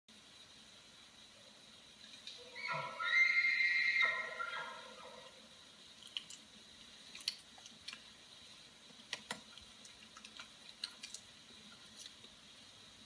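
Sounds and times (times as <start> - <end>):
quiet hiss: 0.1 - 13.0
faint small clicks and ticks: 6.0 - 6.5, 7.1 - 8.1, 8.9 - 12.4.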